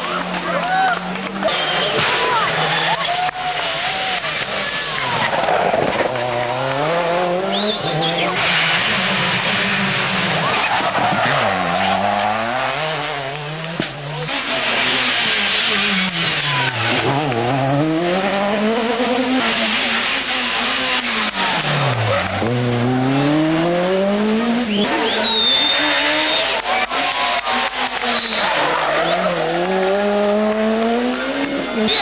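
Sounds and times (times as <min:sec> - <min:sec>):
rally car engine revving: 0:00.0 - 0:32.0
tyre squeal: 0:07.5 - 0:08.8, 0:24.7 - 0:26.6, 0:28.0 - 0:29.8, 0:31.8 - 0:32.0.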